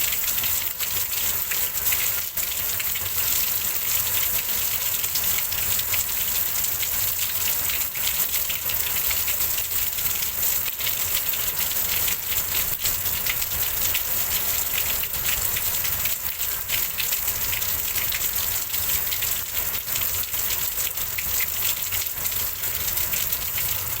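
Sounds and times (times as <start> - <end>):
heavy rain falling: 8.3 - 24.0.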